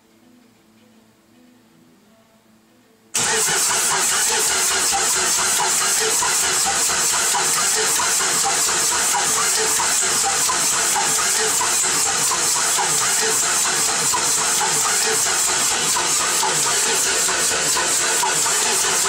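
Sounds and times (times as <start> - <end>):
diesel engine starter cranking: 3.2 - 19.0
diesel engine starting: 3.2 - 19.0.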